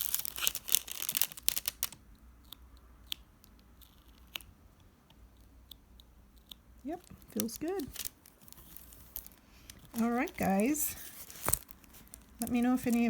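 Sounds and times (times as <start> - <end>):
plastic sheet crinkling: 0.0 - 2.0, 6.9 - 13.0.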